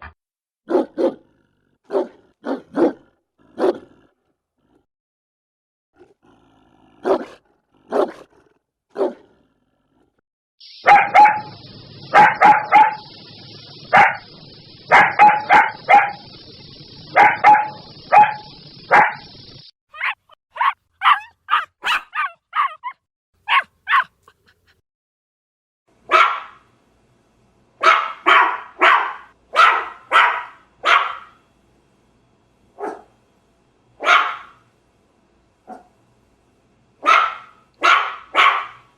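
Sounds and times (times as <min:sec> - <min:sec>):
dog barking: 0:00.7 - 0:01.2, 0:01.9 - 0:03.9, 0:07.0 - 0:08.2, 0:08.9 - 0:09.2, 0:10.8 - 0:13.2, 0:13.9 - 0:14.3, 0:14.9 - 0:16.2, 0:17.1 - 0:19.2, 0:19.9 - 0:24.1, 0:26.1 - 0:26.6, 0:27.8 - 0:31.4, 0:32.8 - 0:33.1, 0:34.0 - 0:34.6, 0:35.6 - 0:36.0, 0:37.0 - 0:38.9.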